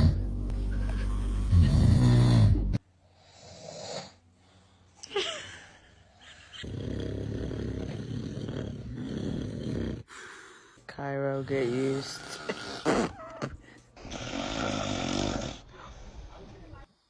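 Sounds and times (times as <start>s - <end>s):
man snoring: 0.0s - 4.2s, 6.5s - 10.4s, 11.3s - 16.2s
soft breath: 10.1s - 10.9s.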